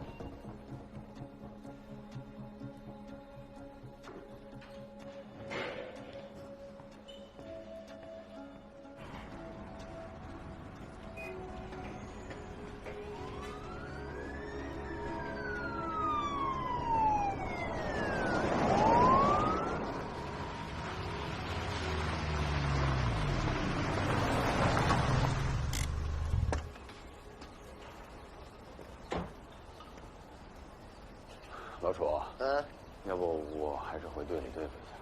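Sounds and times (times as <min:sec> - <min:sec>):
siren wailing: 0:10.2 - 0:21.5.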